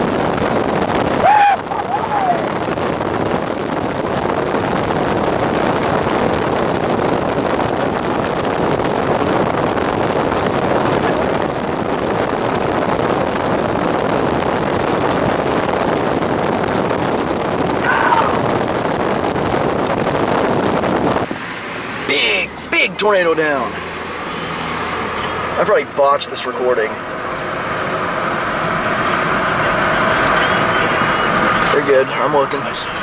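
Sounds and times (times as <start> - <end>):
wind rushing: 0.0 - 21.9
vehicle driving at speed: 0.0 - 33.0.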